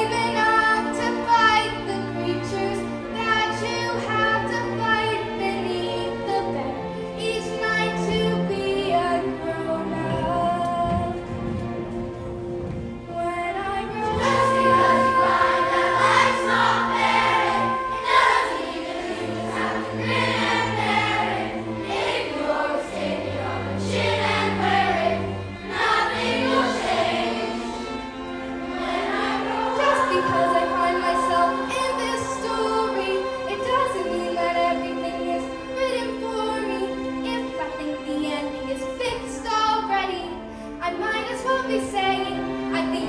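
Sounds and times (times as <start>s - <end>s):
ensemble sustained chords: 13.9s - 35.4s.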